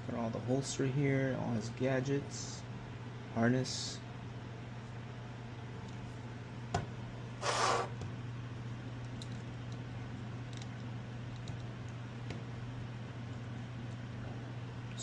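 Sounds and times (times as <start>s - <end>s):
air conditioning hum: 0.0s - 15.0s.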